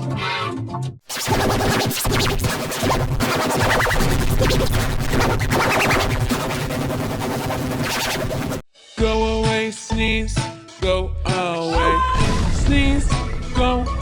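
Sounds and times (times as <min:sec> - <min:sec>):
crackles: 0:01.1 - 0:08.6
children's song music: 0:08.7 - 0:14.0.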